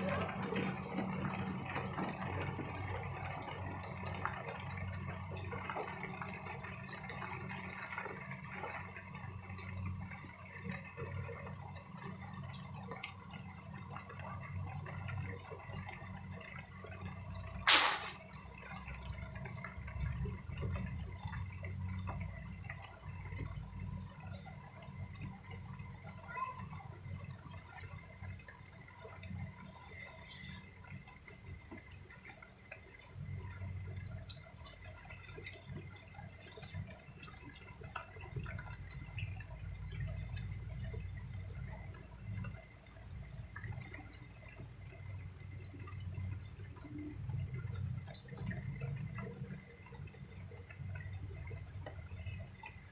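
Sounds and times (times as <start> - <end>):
drips: 0.0 - 52.9
steady rain: 0.0 - 52.9
loud sharp click: 17.7 - 18.2.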